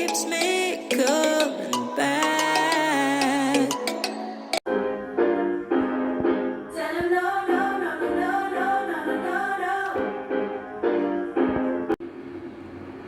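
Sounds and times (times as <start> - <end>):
person singing: 0.0 - 4.6, 6.7 - 11.4
piano chords: 0.0 - 12.0.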